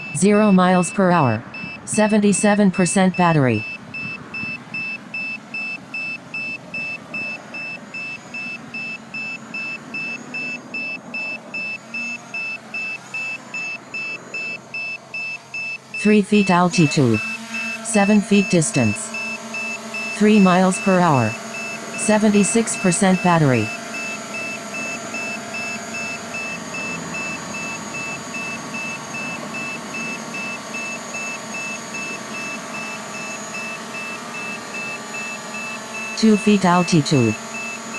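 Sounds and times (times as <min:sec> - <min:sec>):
short high-pitched beeps: 0:00.0 - 0:37.9
steady hum: 0:16.0 - 0:37.9.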